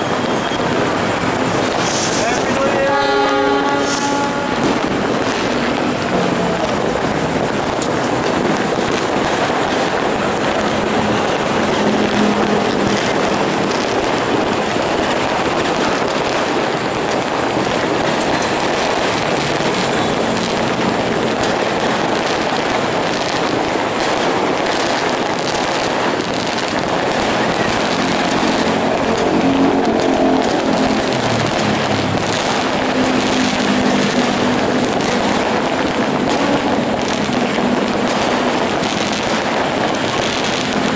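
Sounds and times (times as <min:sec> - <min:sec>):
fireworks crackling: 0:00.0 - 0:40.9
locomotive horns: 0:02.0 - 0:05.0, 0:27.3 - 0:31.9.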